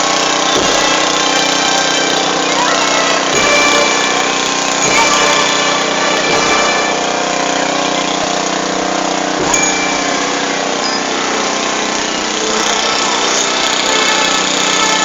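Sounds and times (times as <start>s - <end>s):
band playing a funeral march: 0.0s - 15.0s.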